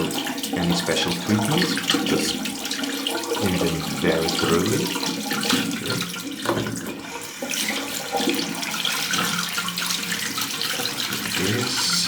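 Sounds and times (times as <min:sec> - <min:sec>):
tap water running into sink: 0:00.0 - 0:12.0.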